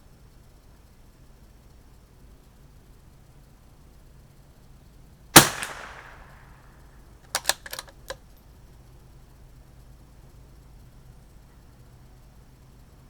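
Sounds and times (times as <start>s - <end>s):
rifle bolt metallic clicks: 5.4s - 6.4s, 7.3s - 8.2s
rifle shot with echo: 5.4s - 6.6s, 7.4s - 8.2s.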